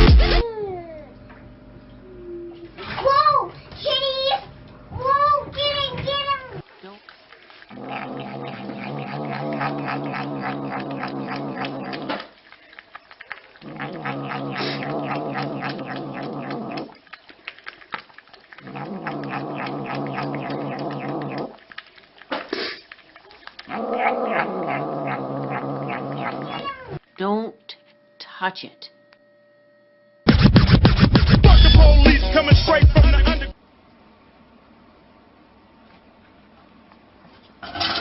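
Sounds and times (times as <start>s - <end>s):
cat growling and yowling: 7.7s - 12.3s, 13.6s - 17.0s, 18.5s - 21.7s, 23.5s - 27.0s.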